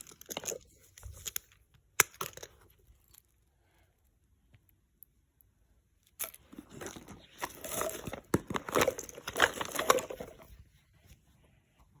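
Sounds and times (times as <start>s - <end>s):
crinkling clicks and crunches: 0.0s - 3.4s, 6.0s - 10.6s.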